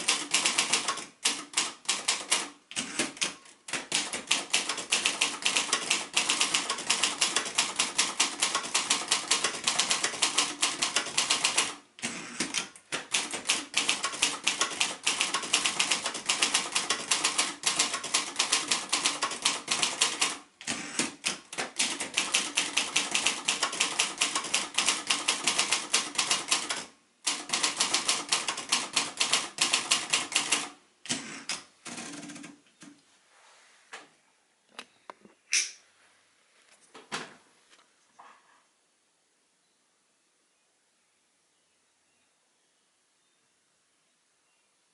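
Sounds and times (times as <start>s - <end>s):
manual typewriter typing: 0.0s - 32.6s.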